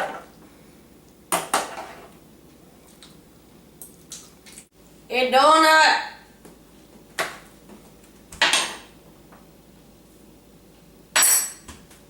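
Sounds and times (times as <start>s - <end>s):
kitchenware clattering: 8.4s - 8.9s, 11.2s - 11.7s.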